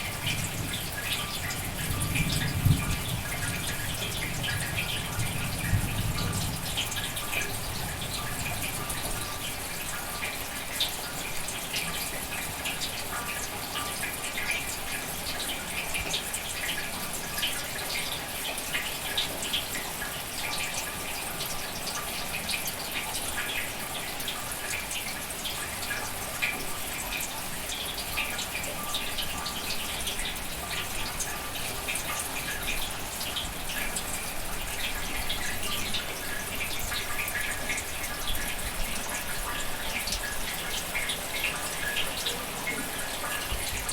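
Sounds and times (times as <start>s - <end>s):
steady rain: 0.0s - 43.9s
raindrops ticking: 25.8s - 43.9s.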